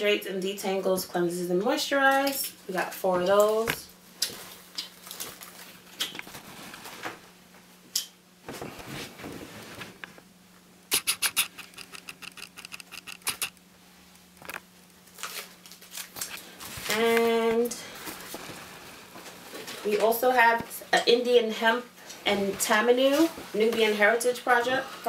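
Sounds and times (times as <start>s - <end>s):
rapid even ticks: 10.9s - 13.6s.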